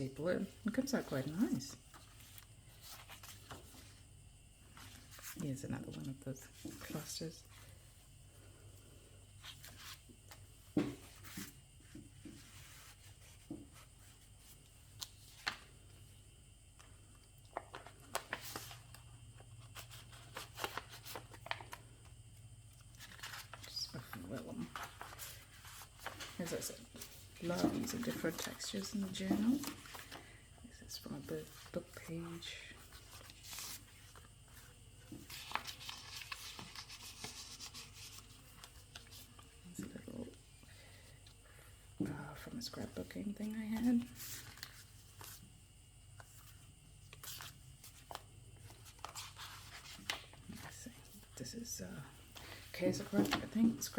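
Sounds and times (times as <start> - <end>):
paper pages rustling: 0.8 - 4.0, 4.7 - 5.4, 17.5 - 21.8, 22.7 - 30.3, 32.8 - 39.5, 43.8 - 45.5, 46.2 - 51.3, 52.3 - 53.9.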